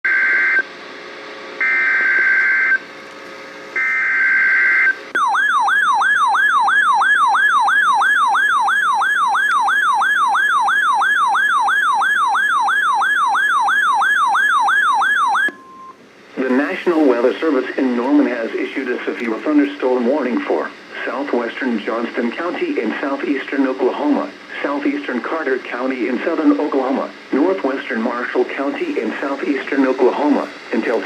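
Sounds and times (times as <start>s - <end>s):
warbling alarm tone: 1.6s - 2.8s, 3.8s - 16.0s.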